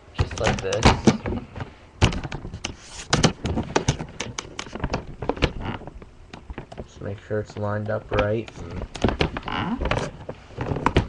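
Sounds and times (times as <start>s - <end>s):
power supply tapping and knocking: 0.2s - 6.9s, 7.6s - 11.0s.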